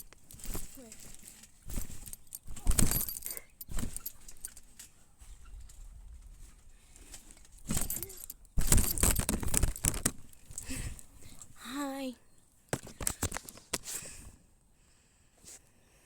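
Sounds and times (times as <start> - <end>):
keys jangling: 0.0 - 4.9, 7.2 - 11.6.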